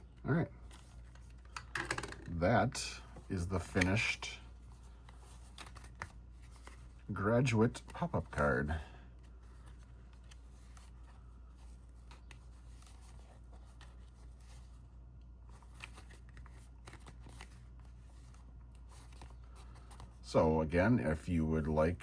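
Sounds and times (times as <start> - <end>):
paper card rustling and clicking: 3.3 - 14.8, 15.4 - 20.2.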